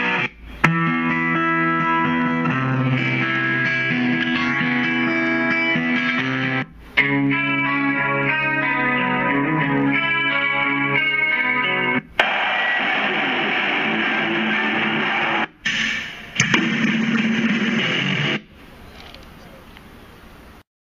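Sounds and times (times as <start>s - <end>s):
guitar playing held chords: 0.0s - 15.8s.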